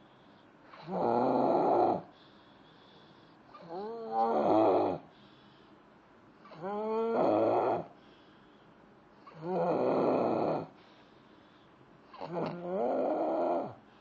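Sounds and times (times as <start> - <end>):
person snoring: 0.7 - 2.1, 3.6 - 5.1, 6.5 - 7.9, 9.3 - 10.8, 12.1 - 13.8.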